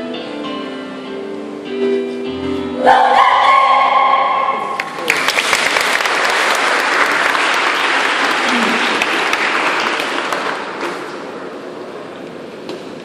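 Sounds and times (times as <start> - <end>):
audience applauding: 4.8 - 11.3.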